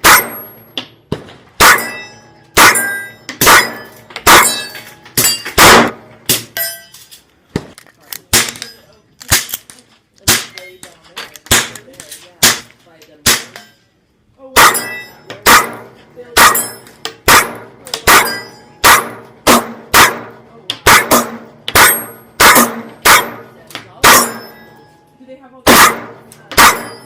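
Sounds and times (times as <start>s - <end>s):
airsoft pistol shots with metallic ring: 0.0s - 0.8s, 1.6s - 6.9s, 14.6s - 24.8s, 25.7s - 27.0s.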